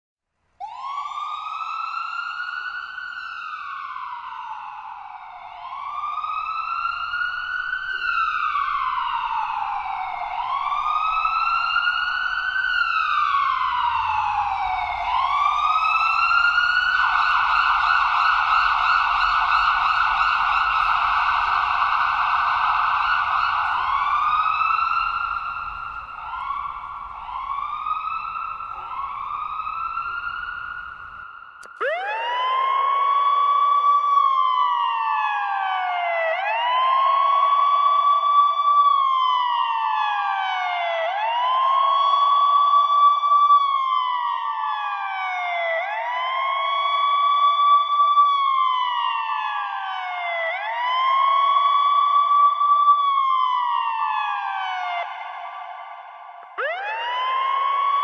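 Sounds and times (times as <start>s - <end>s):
ambulance siren: 0.6s - 58.0s.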